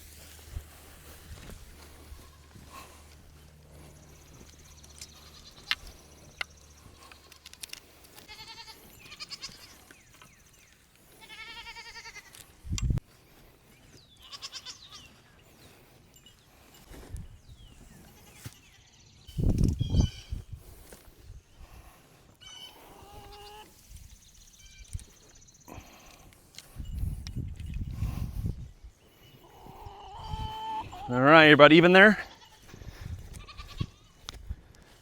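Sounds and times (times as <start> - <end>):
goats bleating: 5.0 - 5.8, 8.2 - 9.8, 11.1 - 12.4, 14.2 - 15.0, 29.5 - 34.2.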